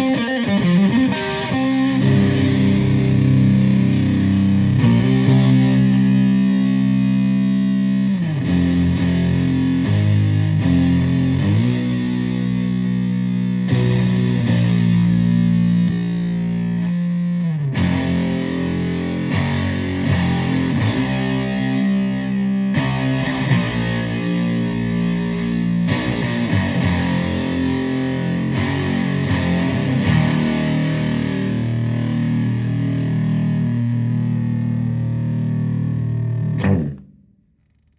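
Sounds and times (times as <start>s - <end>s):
fuzz electric guitar riffs: 0.0s - 37.1s.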